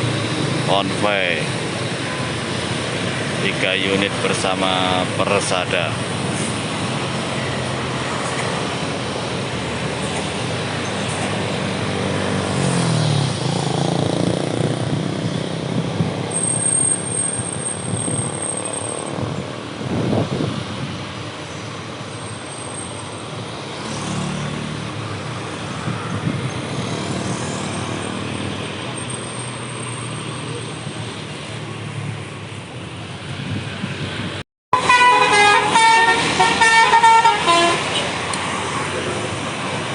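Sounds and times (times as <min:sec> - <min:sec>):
bus diesel engines droning: 0:00.0 - 0:39.9.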